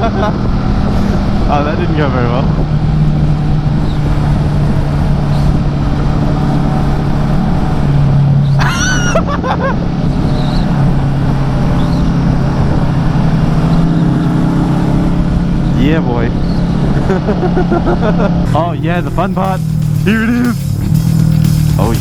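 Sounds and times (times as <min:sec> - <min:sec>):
motorcycle engine running: 0:00.0 - 0:08.6, 0:18.5 - 0:22.0
wind noise: 0:00.0 - 0:17.2.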